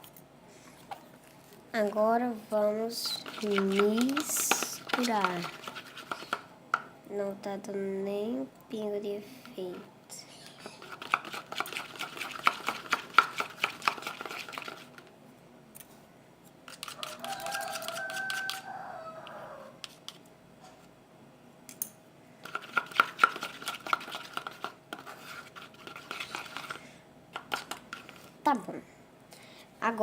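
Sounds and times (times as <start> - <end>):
utensil scraping container: 3.0 - 6.4, 10.7 - 15.0, 16.7 - 18.7, 22.4 - 26.8.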